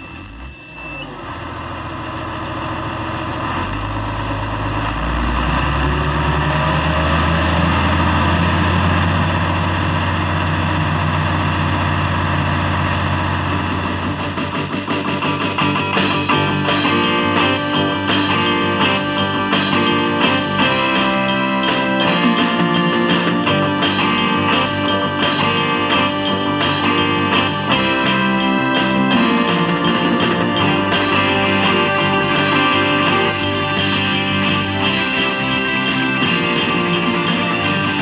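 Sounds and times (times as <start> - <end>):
distorted electric guitar: 0.0 - 38.0
low bass notes: 3.4 - 38.0
rhythmic strummed beat: 13.6 - 38.0.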